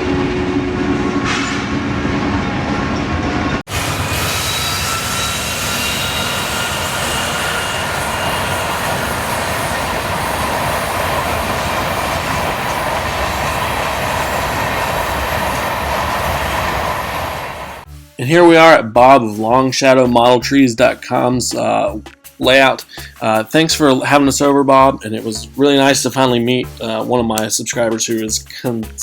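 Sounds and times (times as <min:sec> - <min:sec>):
train wheels rumbling on rail: 0:00.0 - 0:17.9
high wheel squeals: 0:03.7 - 0:17.7.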